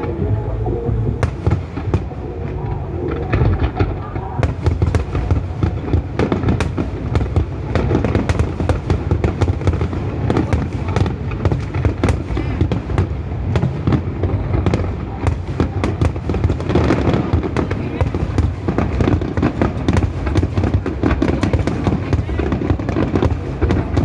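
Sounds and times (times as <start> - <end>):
low rumble: 0.0 - 19.0
fireworks bangs and crackling: 0.0 - 24.0.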